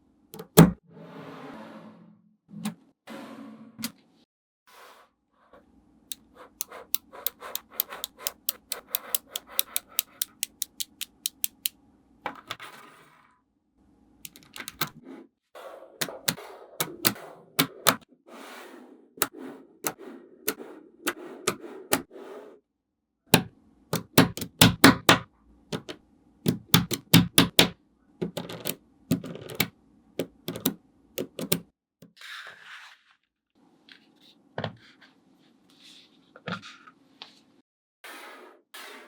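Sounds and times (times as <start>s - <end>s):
magnetic balls clicking together: 6.1s - 11.7s, 14.3s - 14.9s, 23.4s - 25.2s, 25.8s - 31.6s.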